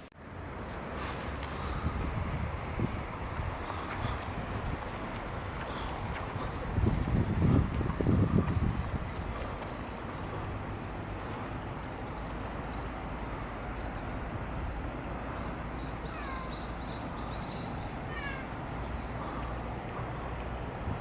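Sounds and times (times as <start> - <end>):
low outdoor rumble: 0.0 - 21.0
small birds chirping: 3.2 - 14.2, 15.2 - 20.6.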